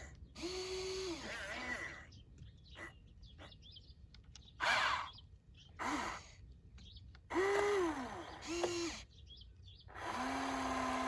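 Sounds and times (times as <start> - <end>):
small electric motors whirring: 0.4 - 1.9, 7.3 - 9.1, 9.9 - 11.0.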